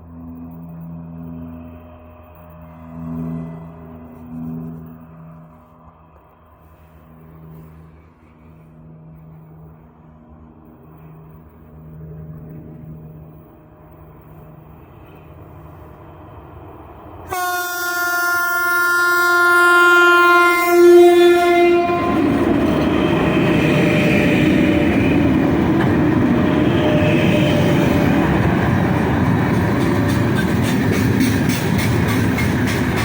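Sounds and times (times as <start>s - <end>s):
freight train rumbling past: 0.0s - 33.0s
locomotive horn blast: 17.3s - 28.4s.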